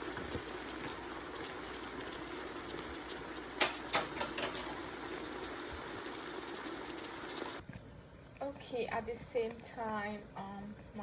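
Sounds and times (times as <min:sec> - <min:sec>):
leaves sizzling in oil: 0:00.0 - 0:07.6.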